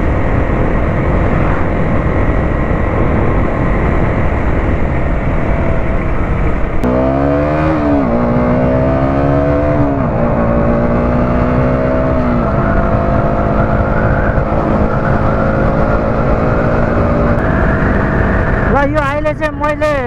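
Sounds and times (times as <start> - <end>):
motorcycle engine accelerating: 0.0 - 20.0
wind noise on microphone: 0.0 - 20.0.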